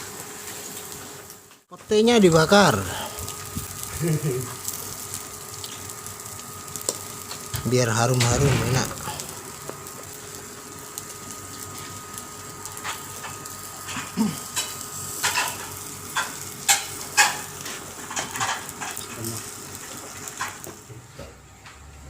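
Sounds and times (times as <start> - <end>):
food sizzling on charcoal grill: 0.0 - 21.0
sharp crackles and clicks: 3.2 - 20.8.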